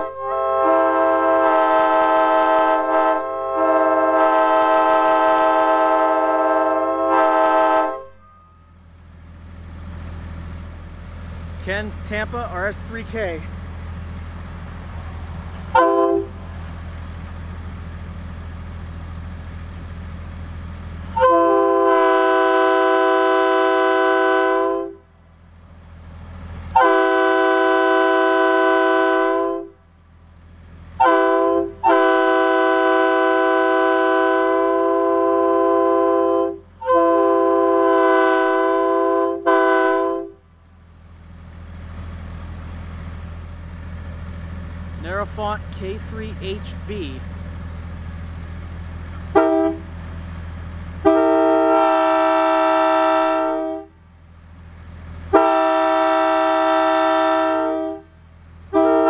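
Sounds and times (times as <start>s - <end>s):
locomotive air horn blasts: 0.0s - 8.7s, 15.7s - 16.5s, 21.2s - 25.0s, 26.7s - 29.8s, 31.0s - 40.4s, 49.3s - 49.9s, 51.0s - 54.0s, 55.3s - 59.0s.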